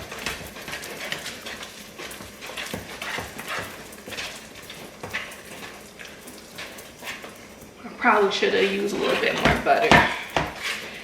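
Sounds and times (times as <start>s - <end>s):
spoon stirring batter in a bowl: 0.0s - 11.0s.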